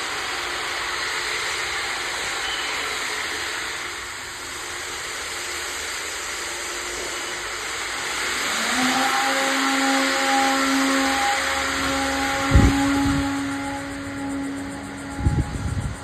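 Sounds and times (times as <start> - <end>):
machine whooshing hiss: 0.0 - 16.0
motor hum: 7.5 - 16.0.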